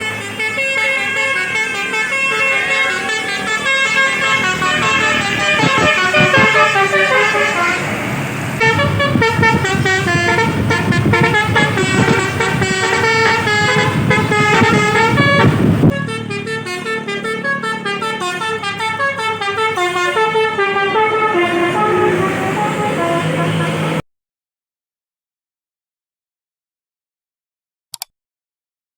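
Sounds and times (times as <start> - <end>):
bus engine noise: 0.0 - 24.0
musical bus horns playing tunes: 0.0 - 24.0.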